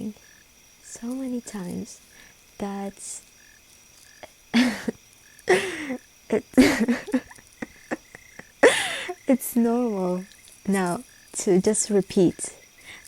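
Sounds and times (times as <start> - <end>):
breathy vocal sounds: 5.5 - 9.3.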